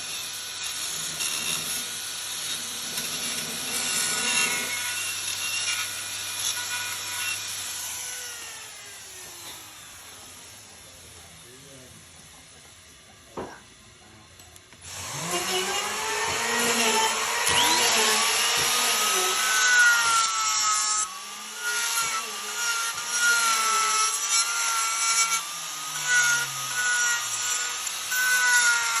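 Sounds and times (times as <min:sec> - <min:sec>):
tool rasping wood with whining: 0:00.0 - 0:10.6, 0:14.8 - 0:29.0.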